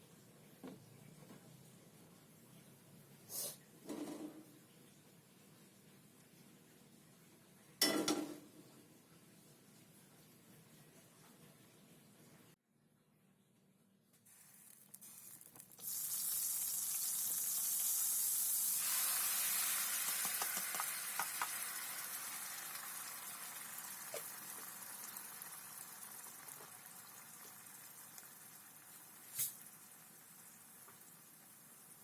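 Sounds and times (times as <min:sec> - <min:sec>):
food sizzling in hot oil: 0:14.2 - 0:32.0.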